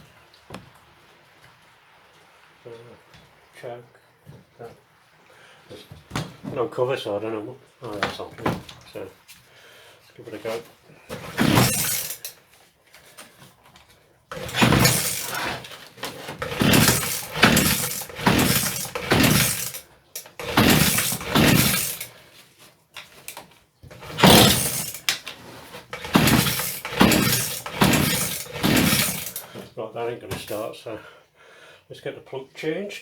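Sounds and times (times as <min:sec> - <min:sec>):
recoil starter pulls: 0:11.1 - 0:12.4, 0:14.3 - 0:22.3, 0:23.0 - 0:29.8.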